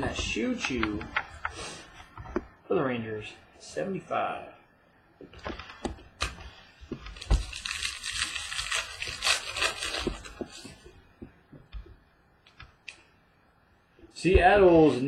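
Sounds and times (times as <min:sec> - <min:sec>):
foil wrapper tearing and crinkling: 0:07.1 - 0:10.6.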